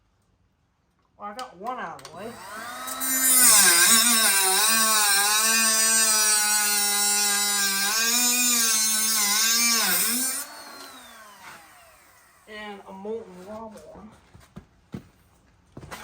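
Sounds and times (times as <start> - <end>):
power tool cutting metal: 2.2 - 12.5.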